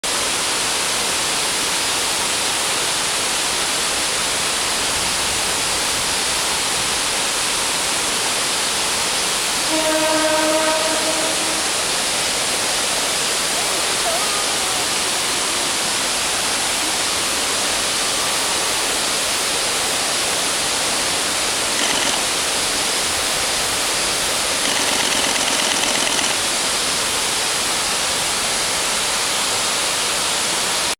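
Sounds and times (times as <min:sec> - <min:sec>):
waterfall rushing: 0:00.1 - 0:30.9
train horn blast: 0:09.5 - 0:12.8.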